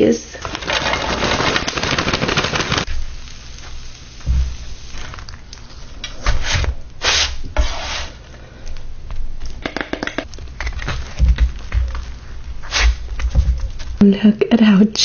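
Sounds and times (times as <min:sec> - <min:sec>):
food rustling and scraping: 0:00.4 - 0:03.8, 0:10.2 - 0:14.0
small clicks and crackles: 0:00.4 - 0:03.8, 0:04.8 - 0:06.2, 0:10.2 - 0:14.0.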